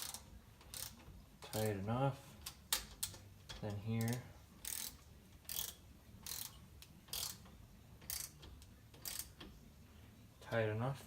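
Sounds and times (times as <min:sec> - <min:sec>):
ratchet wrench ratcheting: 0:00.0 - 0:01.8, 0:04.0 - 0:09.5.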